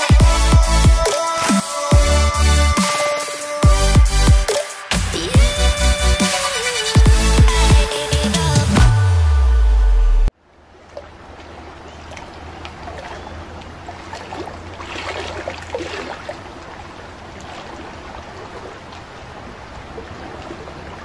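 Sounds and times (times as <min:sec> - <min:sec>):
stream water over rocks: 0:10.4 - 0:21.0.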